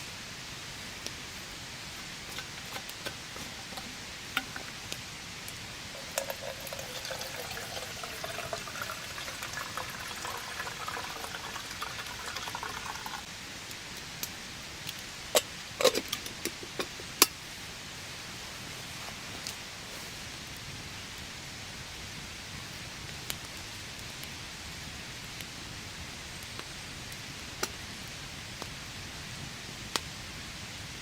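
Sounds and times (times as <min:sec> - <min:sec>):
rain pattering: 0:00.0 - 0:15.5
liquid poured into a container: 0:06.0 - 0:13.3.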